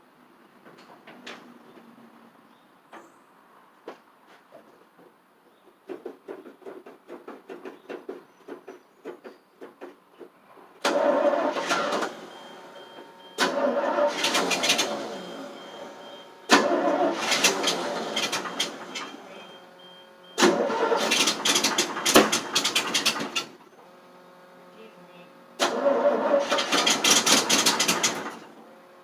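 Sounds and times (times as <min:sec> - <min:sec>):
truck engine cranking: 0:10.8 - 0:24.3, 0:25.6 - 0:28.9.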